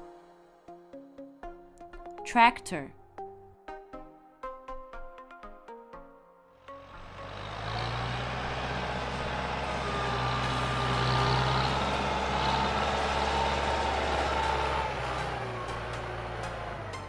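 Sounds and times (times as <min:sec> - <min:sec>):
tractor engine running: 0:06.8 - 0:17.0.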